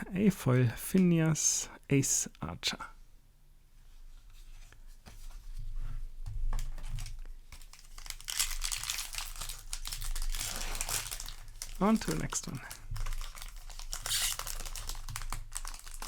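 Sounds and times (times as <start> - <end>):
foil wrapper crinkling and tearing: 7.0 - 16.0.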